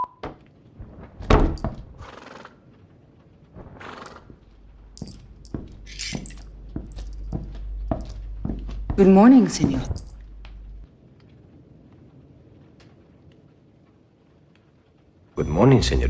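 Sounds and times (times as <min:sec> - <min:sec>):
high metallic clinks: 0:05.0 - 0:08.2, 0:09.8 - 0:10.3.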